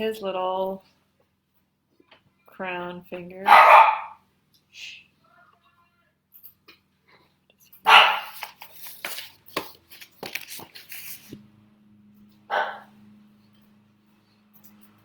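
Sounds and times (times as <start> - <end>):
dogs barking: 3.5 - 4.2, 7.8 - 8.4, 12.5 - 13.0.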